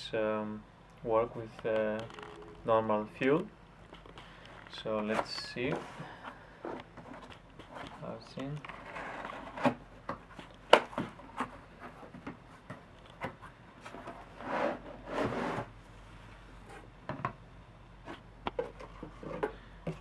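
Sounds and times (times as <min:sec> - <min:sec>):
rubbing sliding sounds: 0:13.8 - 0:16.9.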